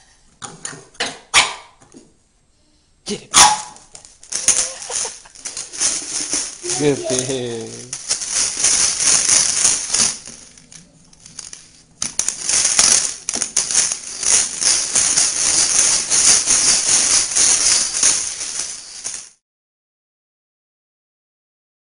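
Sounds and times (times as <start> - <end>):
dry food rattling in plastic ball: 3.8 - 19.4.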